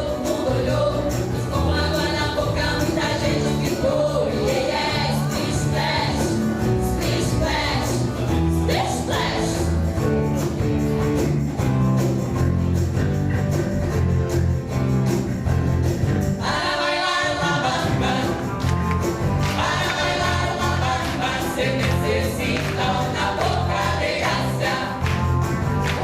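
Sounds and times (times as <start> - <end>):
group of voices singing: 0.0 - 9.9, 16.4 - 26.0
bass line: 0.0 - 26.0
live band music: 0.0 - 26.0.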